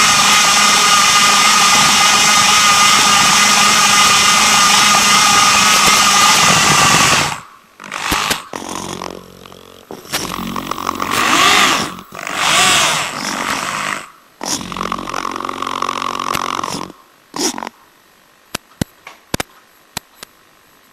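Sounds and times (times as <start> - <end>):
electric motors whining: 0.0 - 17.0.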